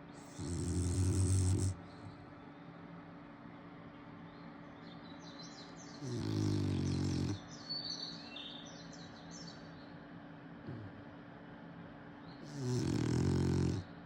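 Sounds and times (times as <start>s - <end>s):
dog snoring: 0.2s - 2.2s, 6.0s - 7.4s, 10.6s - 11.0s, 12.4s - 14.0s.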